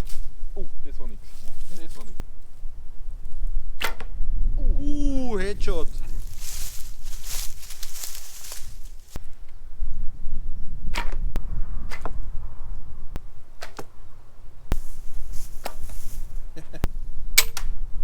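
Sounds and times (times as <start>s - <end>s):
steady low rumble: 2.1s - 15.6s.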